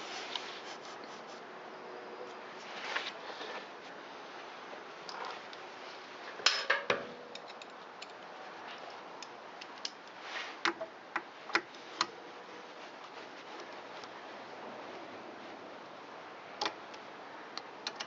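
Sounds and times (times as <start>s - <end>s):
hand tools and metal parts clicking: 6.4s - 8.3s.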